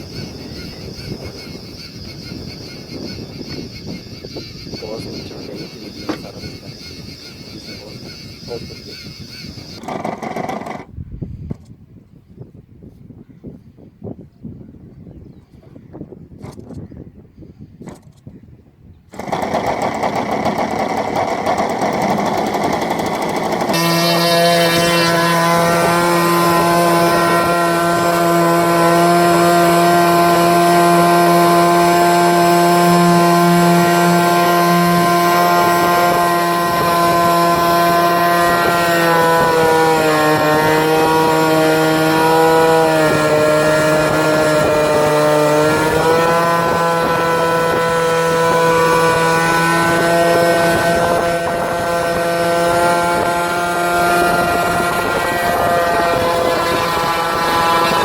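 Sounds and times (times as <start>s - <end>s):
model aircraft propeller motor: 0.0s - 11.0s, 19.1s - 58.0s.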